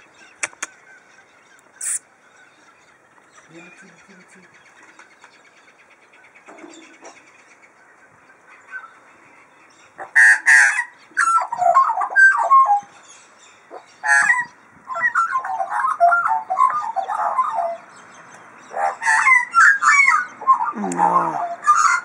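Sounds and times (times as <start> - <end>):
magpie calling: 10.0 - 12.9, 13.7 - 17.9, 18.6 - 22.0
magpie warbling: 18.7 - 22.0.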